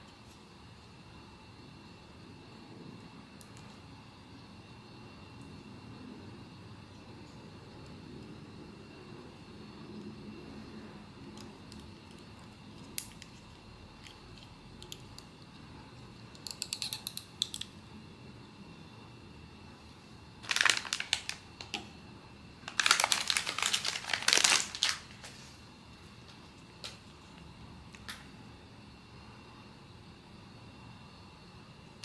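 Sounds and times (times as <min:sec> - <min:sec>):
packaging crinkling: 0:20.4 - 0:21.8, 0:22.6 - 0:25.5.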